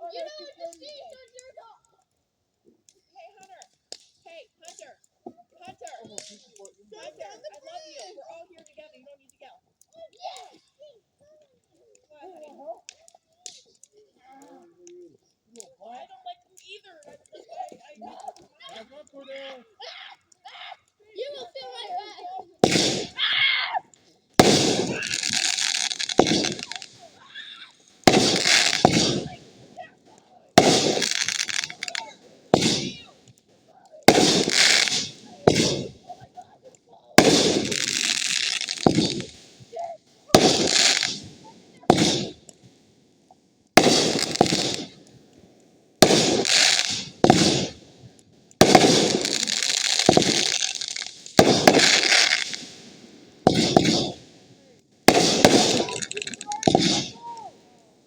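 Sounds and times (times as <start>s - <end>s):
fireworks crackling: 0.0s - 10.8s, 11.5s - 19.4s, 21.0s - 58.0s
fireworks bangs: 22.6s - 23.4s, 24.0s - 36.4s, 37.1s - 43.0s, 43.7s - 58.0s
sharp firework crack: 22.6s - 23.4s, 24.3s - 36.3s, 37.2s - 43.0s, 43.7s - 57.9s.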